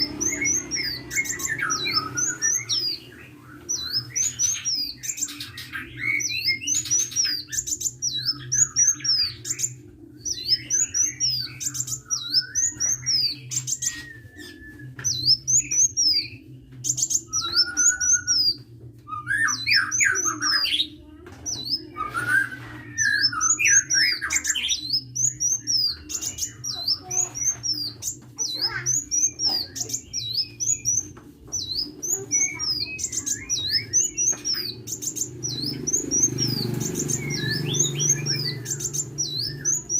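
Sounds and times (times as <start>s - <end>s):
low twittering trills: 21.5s - 39.9s.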